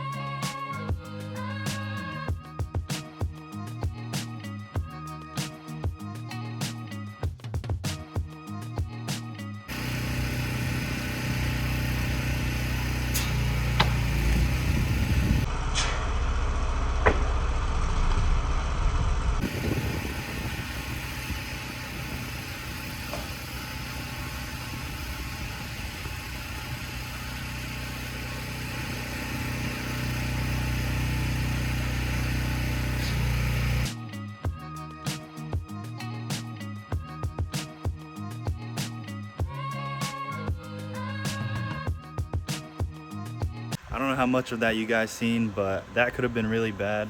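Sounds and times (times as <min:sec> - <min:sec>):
pressure washer engine running: 0:09.7 - 0:15.5, 0:19.4 - 0:34.0.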